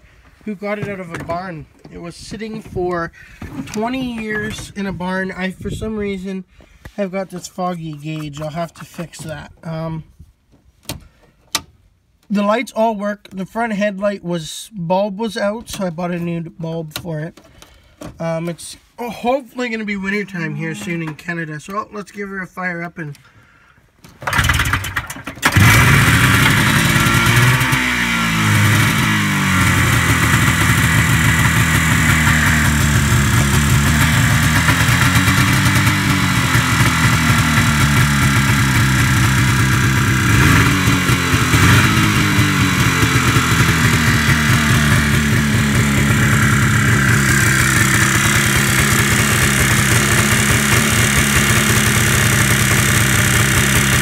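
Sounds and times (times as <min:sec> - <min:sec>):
snowmobile engine starting and idling: 0:00.1 - 0:06.1, 0:24.2 - 0:54.0.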